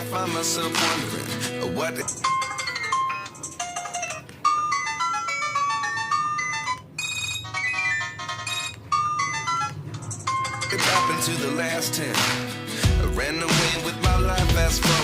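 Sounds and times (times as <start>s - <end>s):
electronic ringtone melodies: 1.8s - 11.9s.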